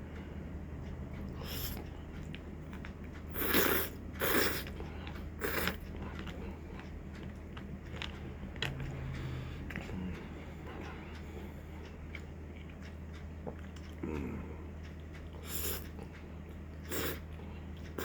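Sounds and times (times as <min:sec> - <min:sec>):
person slurping noodles: 0:03.3 - 0:04.7, 0:05.4 - 0:05.8, 0:15.4 - 0:15.8, 0:16.9 - 0:17.2.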